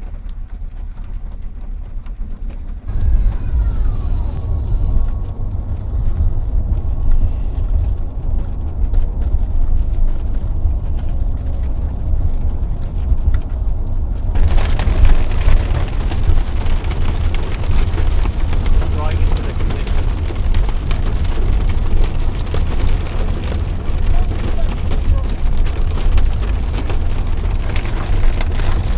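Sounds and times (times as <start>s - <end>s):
vehicle rumble from inside cabin: 0.0s - 28.9s.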